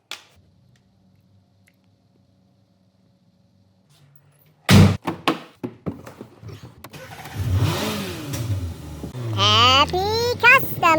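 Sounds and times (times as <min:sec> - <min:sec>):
car engine starting: 0:06.9 - 0:10.9.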